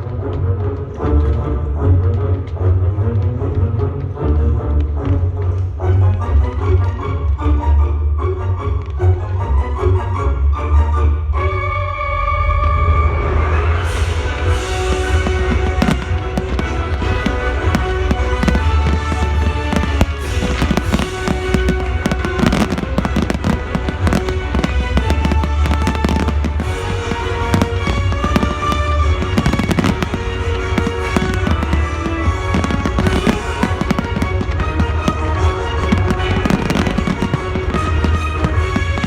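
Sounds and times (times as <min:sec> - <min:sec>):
loud music: 0:13.5 - 0:39.0
fireworks bangs and crackles: 0:13.8 - 0:39.0.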